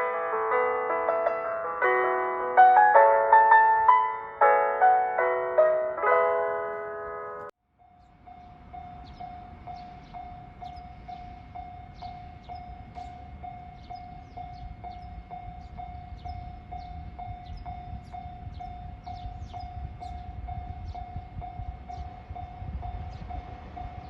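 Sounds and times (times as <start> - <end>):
piano music: 0.0 - 7.6
level crossing warning bell: 1.1 - 24.0.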